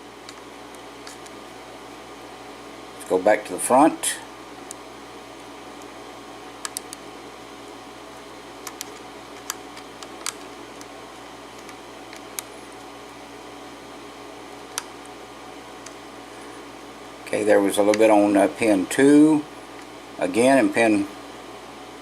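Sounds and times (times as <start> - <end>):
faint background hum: 0.0 - 22.0.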